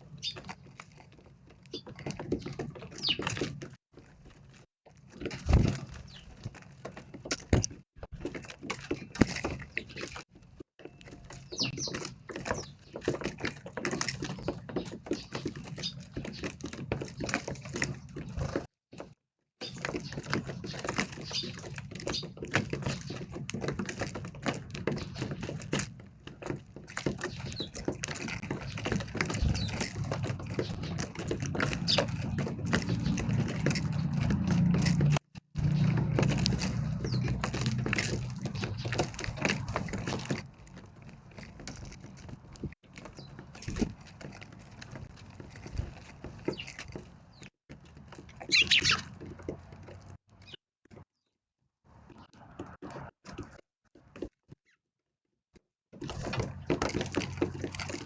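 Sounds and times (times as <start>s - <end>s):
birds chirping: 0.0s - 3.7s, 5.5s - 6.6s, 10.8s - 18.6s, 19.6s - 40.3s, 43.0s - 43.8s, 46.4s - 47.5s, 48.1s - 50.6s
birds pecking light taps: 0.0s - 51.0s.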